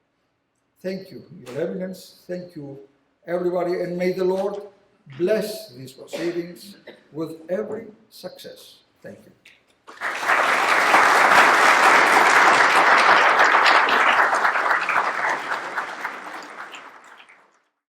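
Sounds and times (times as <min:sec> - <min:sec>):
audience applauding: 0:09.9 - 0:17.6.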